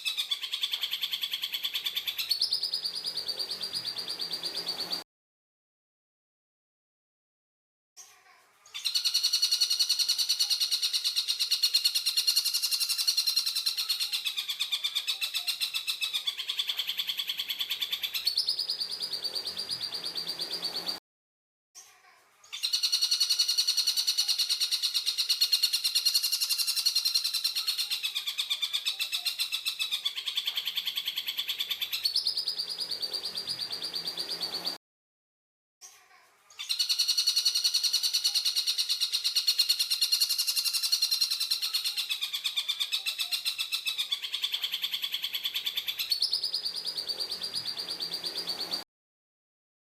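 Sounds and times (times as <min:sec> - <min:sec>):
bird trilling call: 0:08.8 - 0:21.0, 0:22.6 - 0:34.8, 0:36.6 - 0:48.8.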